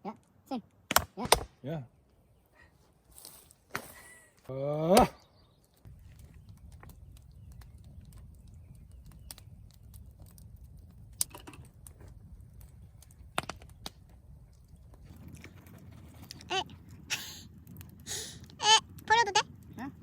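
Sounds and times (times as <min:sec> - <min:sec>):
campfire crackling and popping: 0:03.0 - 0:20.0
low steady rumble: 0:05.9 - 0:20.0.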